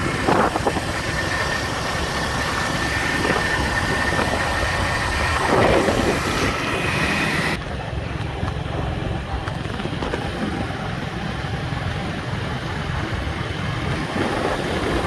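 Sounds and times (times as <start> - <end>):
engine running: 0.0 - 15.0.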